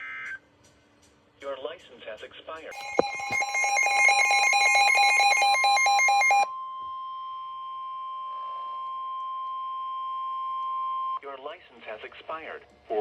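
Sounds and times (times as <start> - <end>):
pulsing warbling alarm tone: 2.8 - 6.4.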